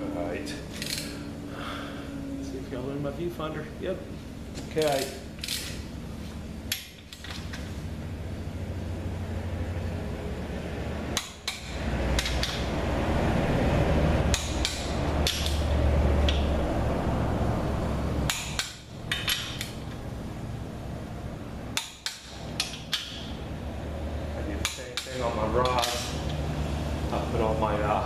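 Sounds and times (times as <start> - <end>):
metallic clicks and knocks of tools: 4.6 - 5.8, 11.2 - 12.7, 24.6 - 26.3.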